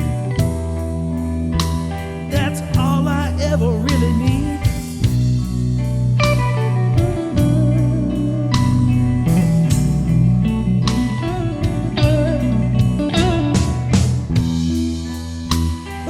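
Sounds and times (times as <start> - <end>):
bass: 0.0 - 16.0
electric guitar bent notes: 0.0 - 16.0
steady drum beat: 0.0 - 16.0.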